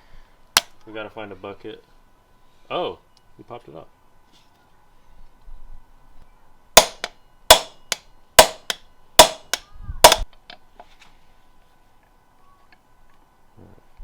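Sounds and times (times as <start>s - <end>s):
hammer striking steel punch: 6.8s - 10.2s.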